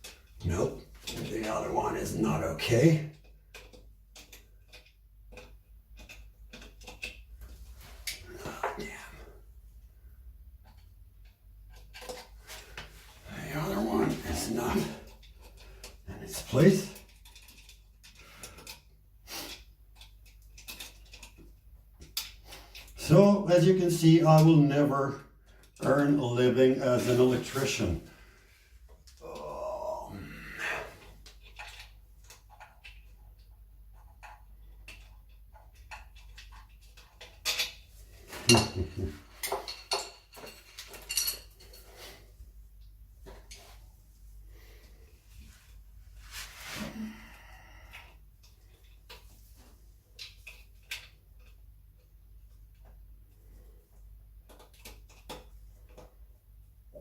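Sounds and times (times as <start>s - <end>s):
screwdriver clinking on metal frame: 35.8s - 41.8s.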